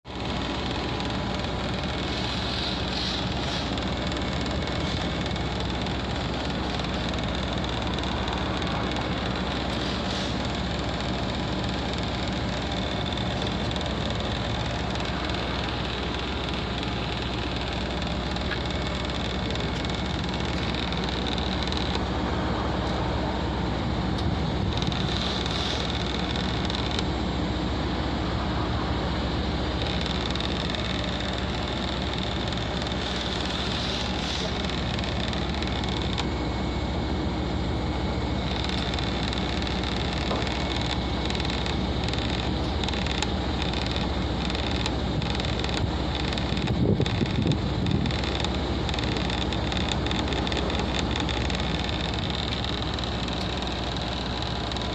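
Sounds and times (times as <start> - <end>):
casing rattling: 0.1 - 22.1, 38.4 - 54.9
air conditioner hum and fan: 0.1 - 54.9.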